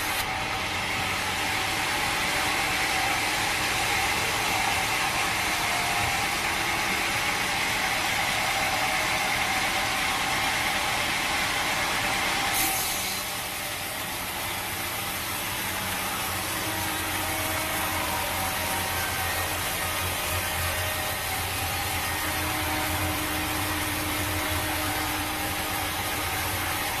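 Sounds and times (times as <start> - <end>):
sawmill machinery running: 0.0 - 27.0.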